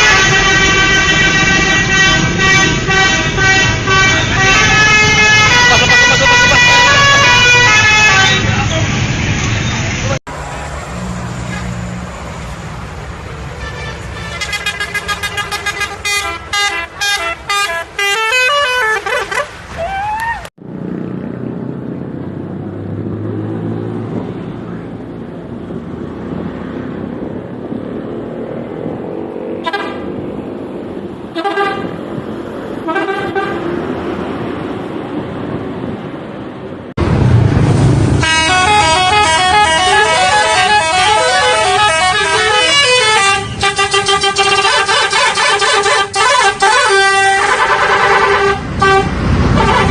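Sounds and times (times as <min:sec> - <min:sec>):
bus multi-tone horn melody: 0:00.0 - 0:08.8, 0:13.4 - 0:19.6, 0:29.6 - 0:30.2, 0:31.3 - 0:32.0, 0:32.8 - 0:33.9, 0:38.2 - 0:49.9
bus engine: 0:00.0 - 0:49.9
street noise: 0:00.0 - 0:49.9.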